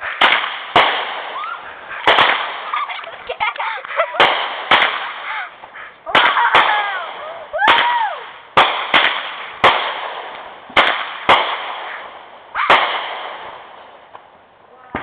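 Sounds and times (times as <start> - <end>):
firework bangs: 0.0 - 14.3
whistling firework tones: 1.2 - 1.7.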